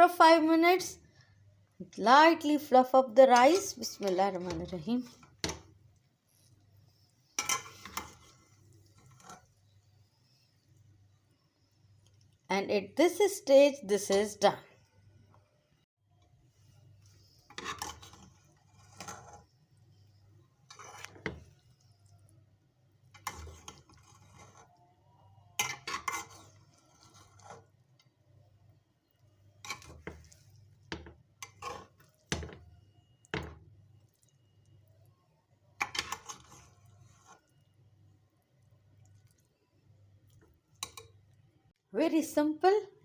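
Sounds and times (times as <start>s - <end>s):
metal spoon scraping a pot: 3.2s - 5.6s, 7.3s - 9.8s, 17.0s - 19.6s, 20.2s - 22.0s, 23.0s - 24.8s, 25.5s - 28.1s, 29.6s - 32.6s, 35.8s - 37.7s, 40.8s - 41.2s.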